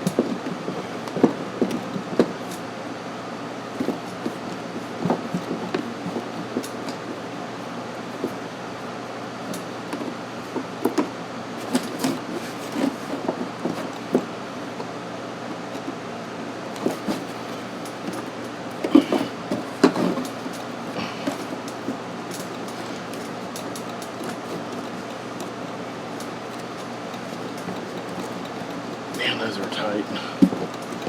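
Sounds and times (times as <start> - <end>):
steady background hum: 0.0 - 31.0
screwdriver and plastic clicks: 21.6 - 29.2.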